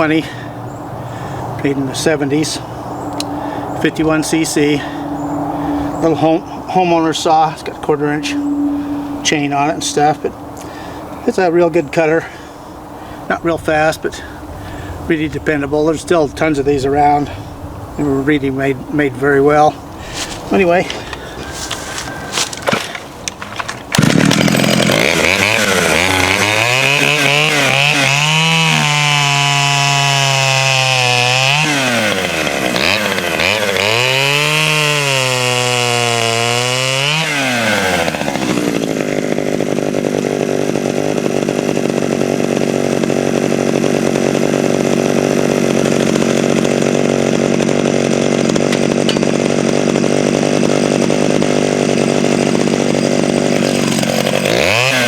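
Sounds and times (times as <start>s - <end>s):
chainsaw revving and cutting log: 0.0s - 18.6s, 19.3s - 55.0s.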